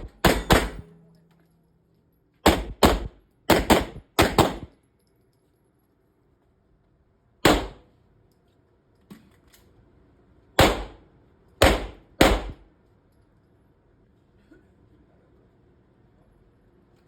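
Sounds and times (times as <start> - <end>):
pistol shots with ringing tail: 0.0 - 1.1, 2.4 - 4.7, 7.4 - 7.8, 10.6 - 11.0, 11.6 - 12.6.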